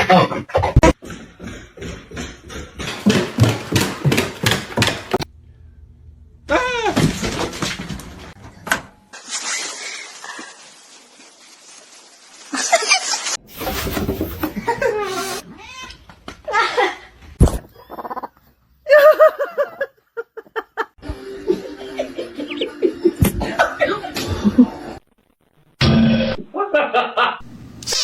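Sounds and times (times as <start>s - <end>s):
people laughing: 18.9s - 24.9s.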